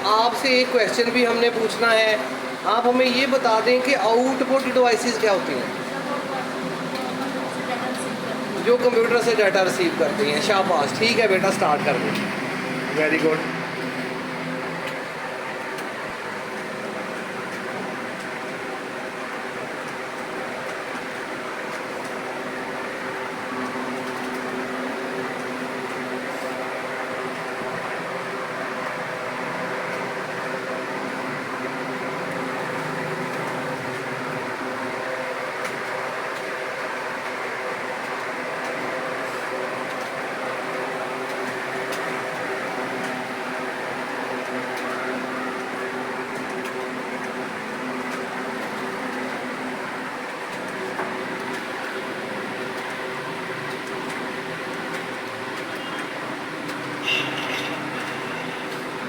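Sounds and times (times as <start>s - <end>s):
steady mechanical hum: 0.0s - 59.0s.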